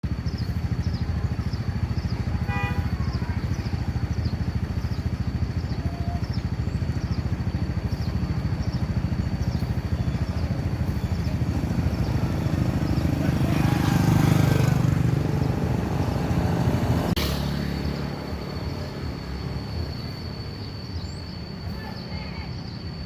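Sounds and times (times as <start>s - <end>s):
vehicle engine running: 0.0s - 23.0s
vehicle horn honk: 2.4s - 3.1s.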